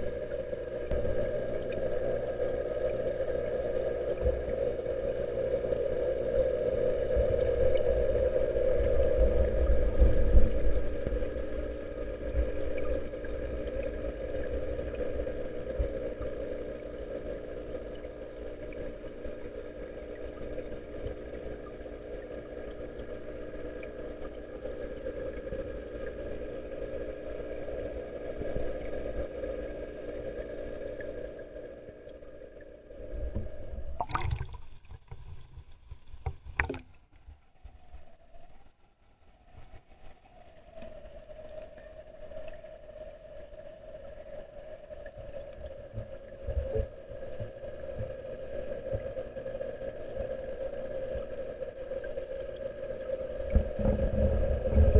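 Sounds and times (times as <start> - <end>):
low irregular rumbles: 40.9 - 54.9.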